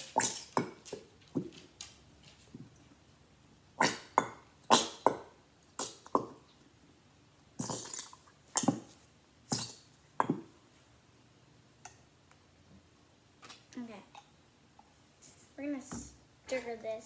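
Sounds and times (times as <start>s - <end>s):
glue bottle squelching and sputtering: 0.0s - 1.5s, 5.8s - 6.4s, 7.6s - 8.9s.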